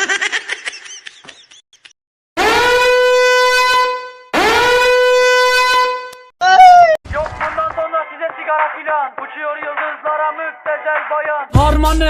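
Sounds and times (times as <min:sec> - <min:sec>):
horn blasts: 0:02.4 - 0:06.3.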